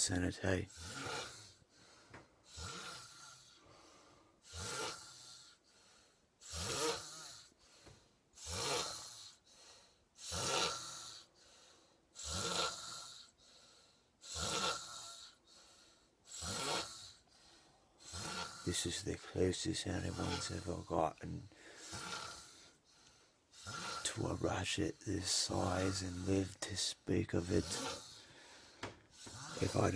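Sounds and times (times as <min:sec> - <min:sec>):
woman snoring: 0:00.7 - 0:01.6, 0:02.4 - 0:05.6, 0:06.4 - 0:07.6, 0:08.4 - 0:09.4, 0:10.2 - 0:11.3, 0:12.2 - 0:13.4, 0:14.2 - 0:15.4, 0:16.3 - 0:17.2, 0:17.9 - 0:18.8, 0:20.0 - 0:21.0, 0:21.7 - 0:22.8, 0:23.6 - 0:24.2, 0:27.4 - 0:28.3, 0:29.2 - 0:29.9.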